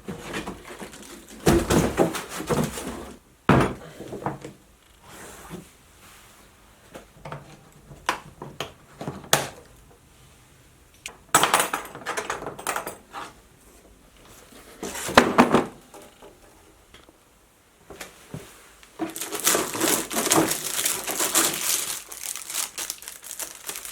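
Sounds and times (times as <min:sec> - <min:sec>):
rustling and scraping: 0:00.0 - 0:03.2, 0:04.3 - 0:09.3, 0:13.0 - 0:16.6, 0:17.8 - 0:23.9
packaging knocks and clicks: 0:19.0 - 0:23.9.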